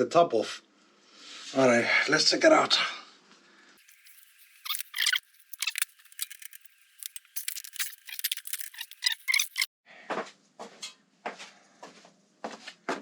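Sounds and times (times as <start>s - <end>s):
metal parts clicking and rattling: 3.8s - 9.7s.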